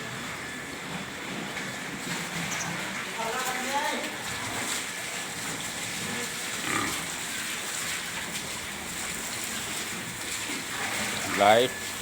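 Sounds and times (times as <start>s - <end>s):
pigs calling: 6.0s - 7.4s.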